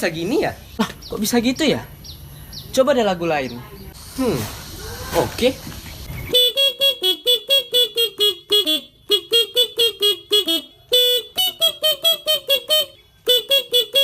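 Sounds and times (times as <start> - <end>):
motorcycle horn playing a tune: 6.3 - 14.0.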